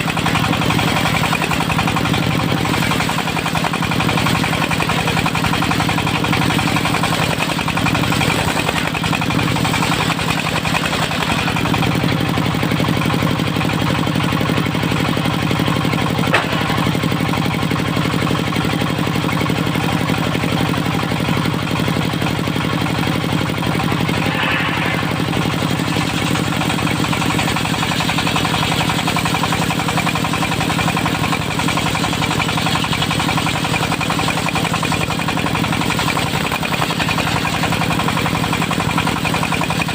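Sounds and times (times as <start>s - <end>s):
diesel engine running: 0.0s - 39.9s
short sharp knock: 16.3s - 17.0s.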